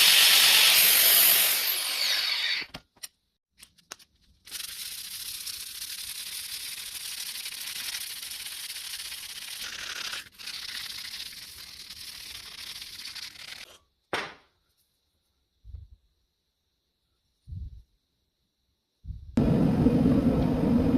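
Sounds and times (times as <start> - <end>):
power tool grinding: 0.0 - 2.7.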